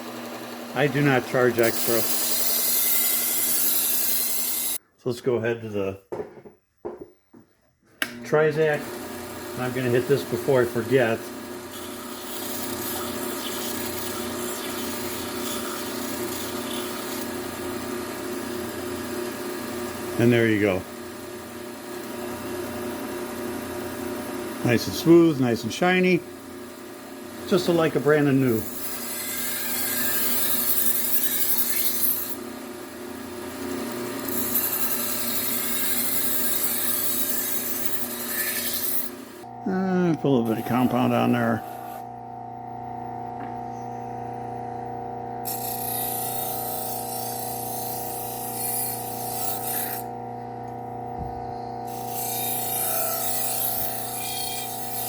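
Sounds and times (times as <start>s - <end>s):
motor hum: 8.0s - 20.2s, 37.8s - 55.0s.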